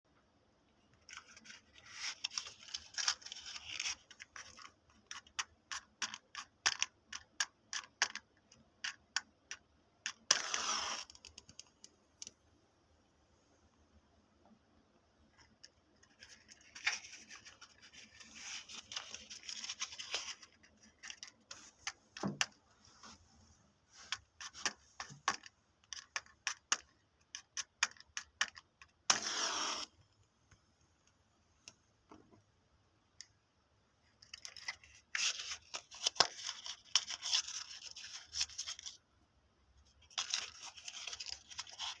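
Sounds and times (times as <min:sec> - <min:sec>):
match scratching on matchbox: 0:10.3 - 0:11.2, 0:29.1 - 0:30.0.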